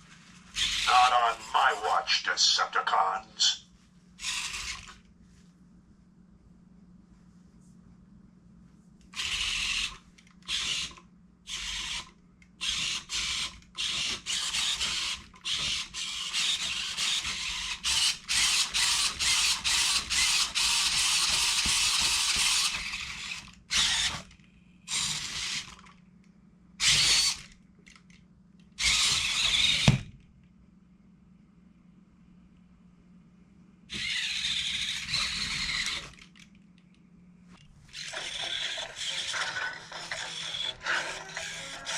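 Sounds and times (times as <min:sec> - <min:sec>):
servo motors whirring: 0:00.6 - 0:01.0, 0:04.2 - 0:05.0, 0:09.2 - 0:24.3, 0:26.8 - 0:27.5, 0:28.8 - 0:29.9, 0:33.9 - 0:36.3, 0:37.9 - 0:41.9.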